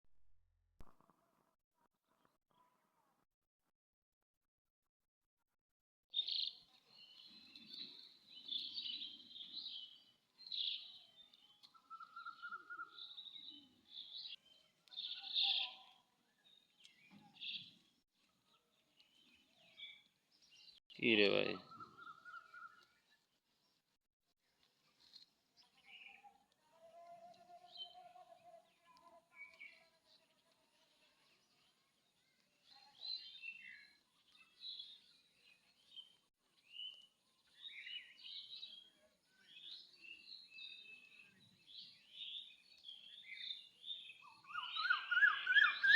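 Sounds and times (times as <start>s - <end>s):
small birds chirping: 6.1s - 23.9s, 24.5s - 45.9s
wavering bird call: 44.4s - 45.9s.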